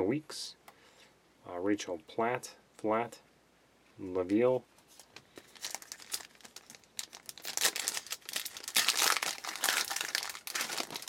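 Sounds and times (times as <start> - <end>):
crinkly wrapper rustling: 4.8 - 11.0.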